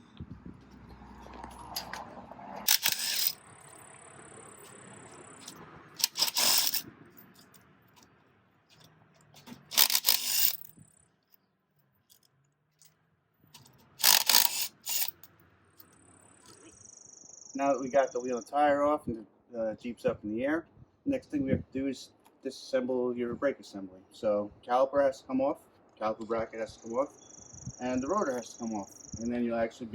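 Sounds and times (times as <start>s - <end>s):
impact wrench rattling: 2.7s - 3.4s, 5.4s - 7.5s, 8.7s - 10.8s, 13.6s - 15.3s.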